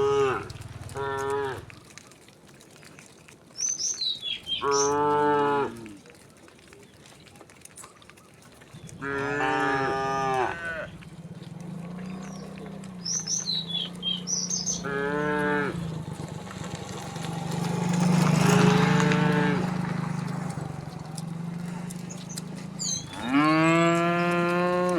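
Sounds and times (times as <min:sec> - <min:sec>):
cows mooing: 0:00.0 - 0:01.8, 0:04.5 - 0:06.0, 0:08.9 - 0:24.9.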